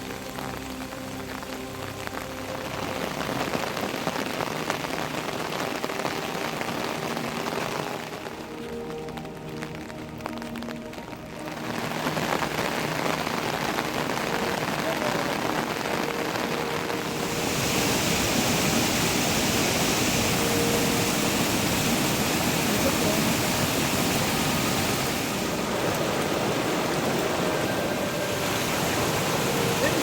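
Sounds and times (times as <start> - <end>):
heavy rain falling: 0.0 - 30.0.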